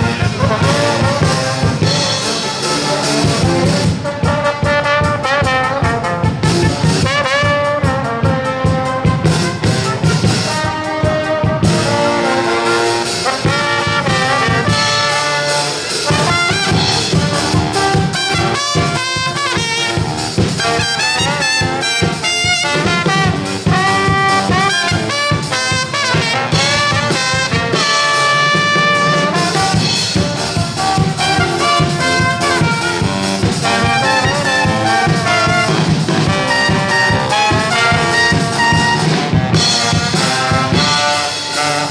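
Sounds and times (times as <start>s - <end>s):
brass ensemble playing: 0.0s - 41.9s.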